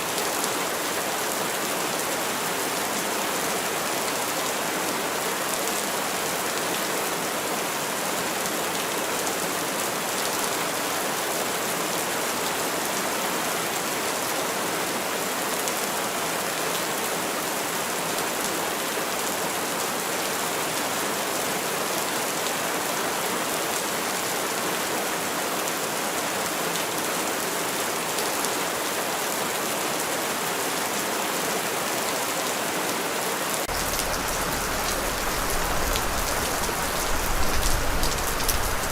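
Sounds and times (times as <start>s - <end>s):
steady rain hiss: 33.2s - 38.9s
deeper rain layer: 33.6s - 38.9s.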